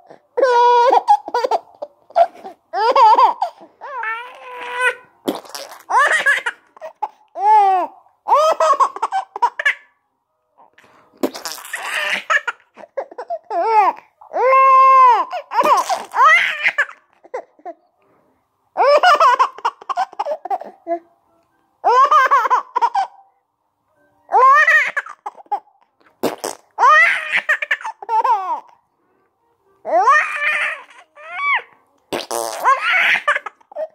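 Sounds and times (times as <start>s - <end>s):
baby laughing hysterically: 0.4s - 9.9s, 11.3s - 17.8s, 18.8s - 20.8s, 21.8s - 23.2s, 24.3s - 25.7s, 26.8s - 28.7s, 29.9s - 31.7s, 32.6s - 33.9s.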